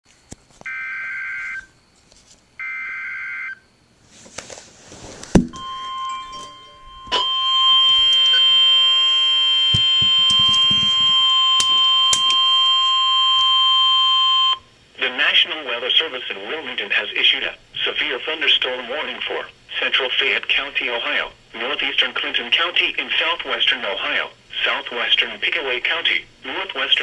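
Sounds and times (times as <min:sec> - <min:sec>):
data-burst header tones: 0:05.5 - 0:13.4.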